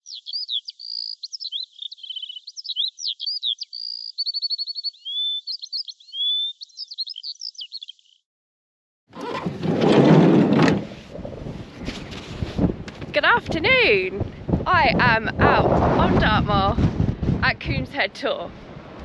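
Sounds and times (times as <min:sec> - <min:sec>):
songbird singing: 0:00.0 - 0:08.2.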